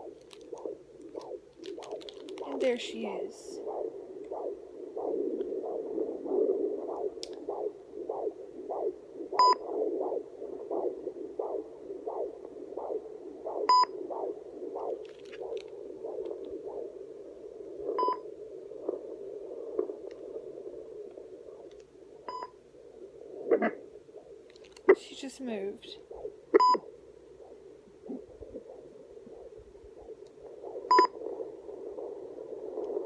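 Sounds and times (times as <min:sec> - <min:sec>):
fetal heartbeat whooshing pulse: 0:00.0 - 0:33.0
steady hiss: 0:00.0 - 0:33.0.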